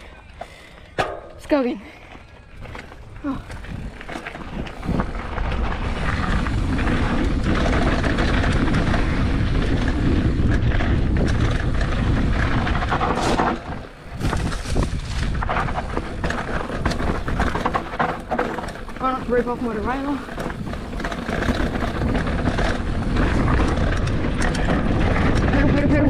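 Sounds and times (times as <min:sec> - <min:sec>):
bike rattling: 0:00.0 - 0:26.0
bike tyres on dirt trail: 0:00.0 - 0:26.0
wind rushing over microphone: 0:02.4 - 0:26.0.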